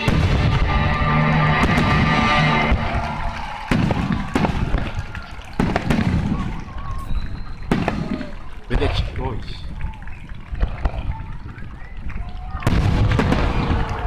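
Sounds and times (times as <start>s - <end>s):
music playing: 0.0s - 4.6s
fireworks bursting with loud bangs: 0.0s - 9.0s, 12.6s - 14.0s.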